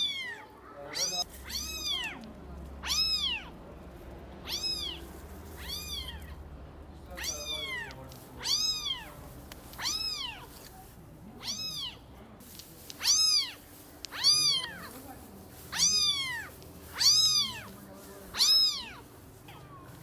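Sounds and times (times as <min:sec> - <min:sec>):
cat meowing: 0:00.0 - 0:03.6, 0:04.4 - 0:06.4, 0:07.1 - 0:10.6, 0:11.4 - 0:12.1, 0:13.0 - 0:15.0, 0:15.7 - 0:17.7, 0:18.3 - 0:20.0.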